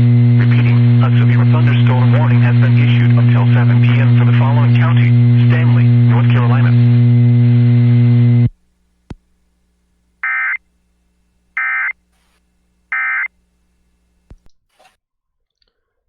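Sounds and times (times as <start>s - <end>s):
loud low buzz: 0.0s - 14.3s
digital data tone bursts: 10.2s - 10.6s, 11.6s - 11.9s, 12.9s - 13.3s.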